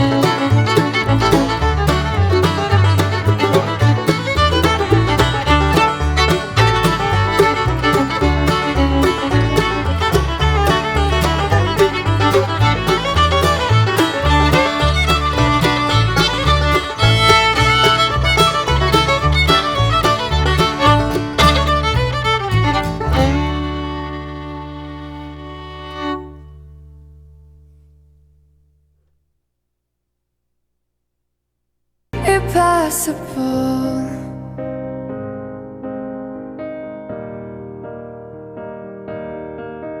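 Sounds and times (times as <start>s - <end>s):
upbeat instrumental music: 0.0s - 26.4s.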